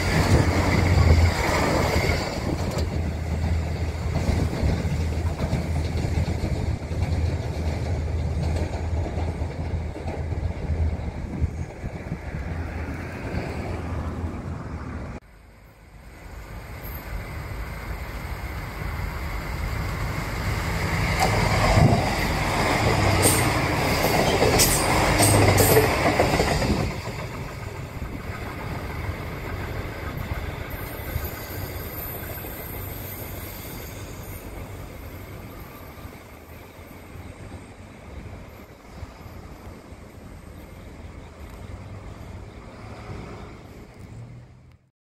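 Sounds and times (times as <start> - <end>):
train wheels clattering: 0.0 - 11.0, 20.7 - 35.4
diesel railcar rumbling past: 0.0 - 44.9
high wheel squeaks: 29.8 - 37.4.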